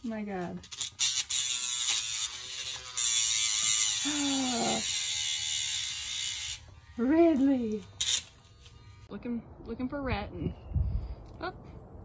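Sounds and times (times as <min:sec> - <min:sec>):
small electric motor buzzing: 0:00.6 - 0:09.1.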